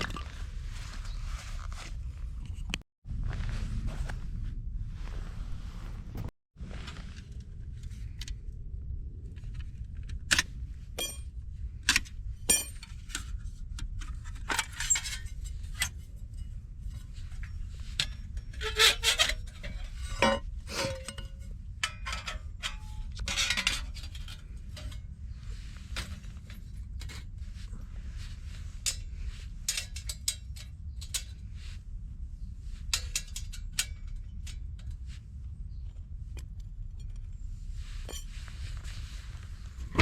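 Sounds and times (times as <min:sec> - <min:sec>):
steady low rumble: 0:00.0 - 0:18.6, 0:19.4 - 0:40.0
metal cookware clinking: 0:11.0 - 0:11.3, 0:12.5 - 0:12.9.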